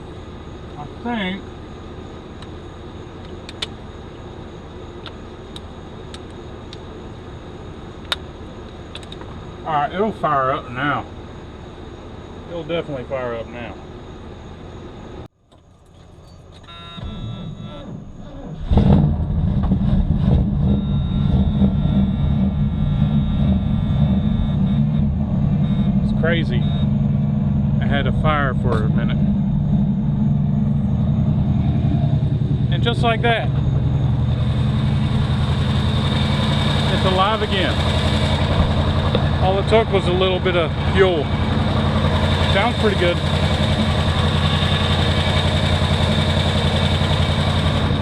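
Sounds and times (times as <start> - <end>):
steady low hum: 0.0 - 48.0
car engine starting and rumbling: 15.4 - 48.0.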